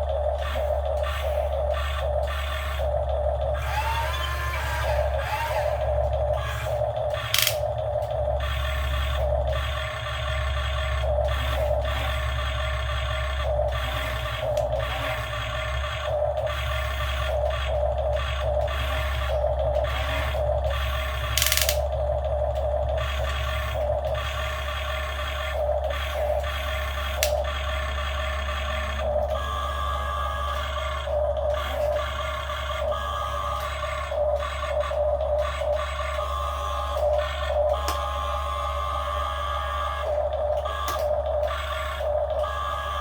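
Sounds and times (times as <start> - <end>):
hydraulic pump whine: 0.0 - 43.0
model excavator motors whirring: 0.0 - 43.0
sharp click: 7.3 - 7.7, 21.4 - 21.9.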